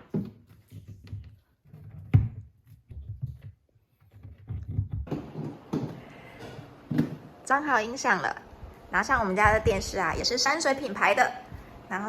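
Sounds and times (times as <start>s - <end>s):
handling knocks and thumps: 0.0s - 7.3s.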